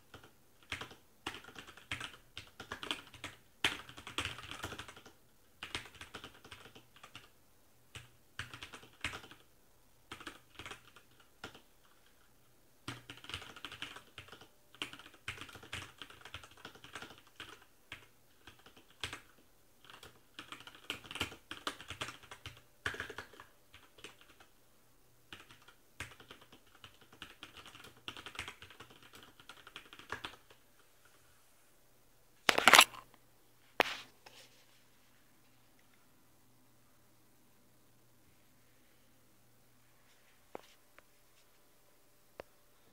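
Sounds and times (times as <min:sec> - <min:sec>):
mechanical keyboard typing: 0:00.1 - 0:07.3, 0:07.9 - 0:09.5, 0:10.1 - 0:12.2, 0:12.8 - 0:24.5, 0:25.3 - 0:30.6.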